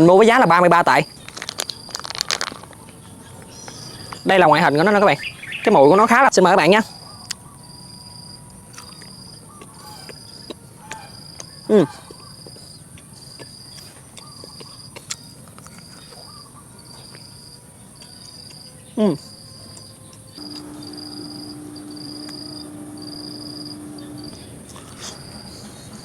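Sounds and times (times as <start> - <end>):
insect chirping: 18.4 - 24.5
steady low hum: 20.4 - 26.0.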